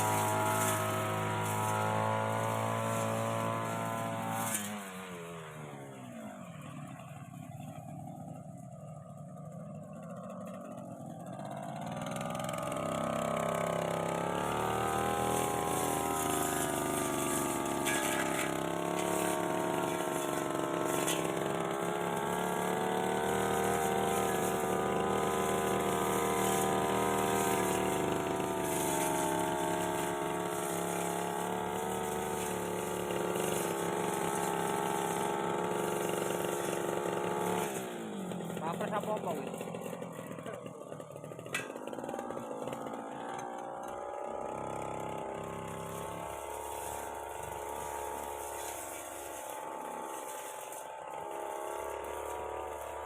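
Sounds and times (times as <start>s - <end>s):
brush cutter engine revving: 0.0s - 53.0s.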